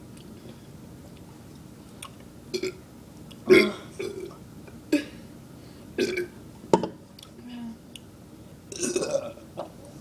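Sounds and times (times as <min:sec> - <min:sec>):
girl burping: 0:08.7 - 0:09.4.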